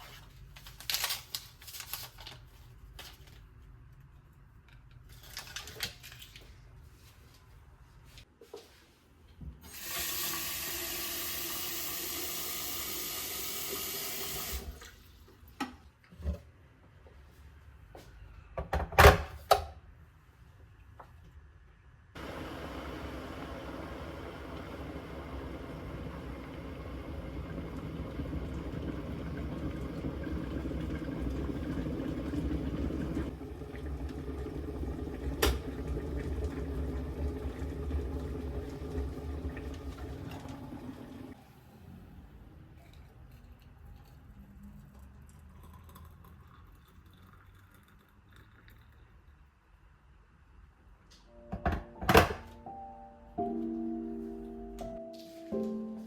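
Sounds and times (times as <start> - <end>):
water tap running: 9.7 - 14.8, 22.2 - 41.4.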